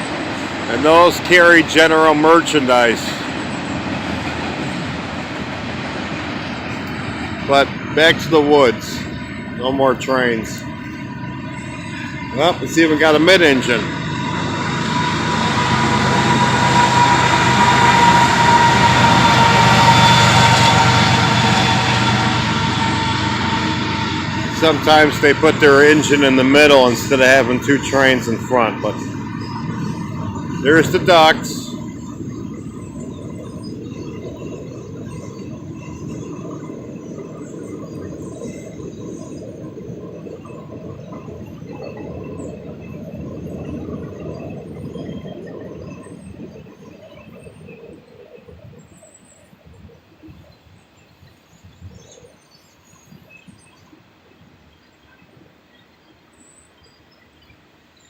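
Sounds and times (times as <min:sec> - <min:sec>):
train wheels on rails: 0:00.0 - 0:46.2
high ringing tone: 0:00.0 - 0:47.9
locomotive engine rumble: 0:00.0 - 0:48.4.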